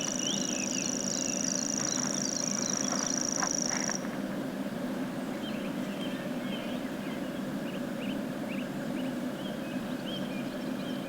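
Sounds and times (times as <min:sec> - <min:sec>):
songbirds chirping: 0:00.0 - 0:04.0.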